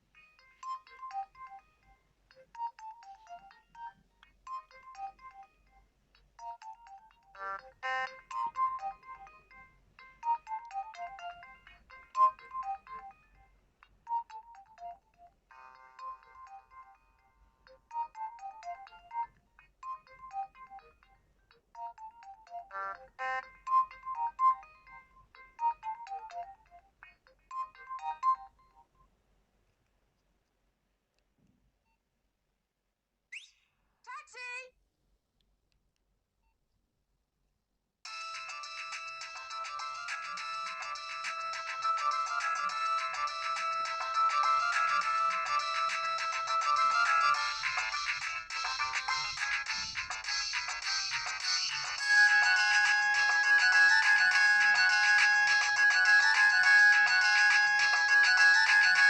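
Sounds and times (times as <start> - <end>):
mobile phone ringtone melody: 0.4 - 28.9, 38.1 - 59.0.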